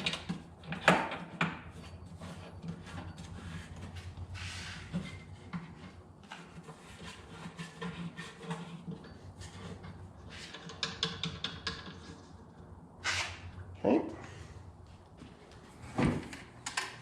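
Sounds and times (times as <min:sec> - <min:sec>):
mounting hardware clicks and rattles: 0:00.0 - 0:01.7, 0:08.8 - 0:12.3, 0:16.0 - 0:17.0.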